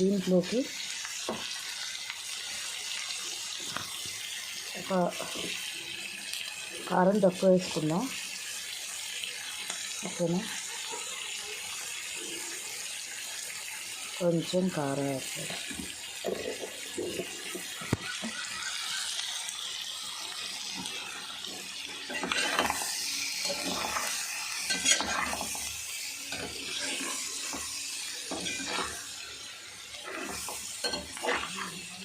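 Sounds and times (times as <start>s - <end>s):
food sizzling in a pan: 0.0s - 32.0s
spoon scraping a pan: 15.5s - 18.3s, 20.8s - 32.0s
spoon clinking against pan: 30.8s - 31.4s.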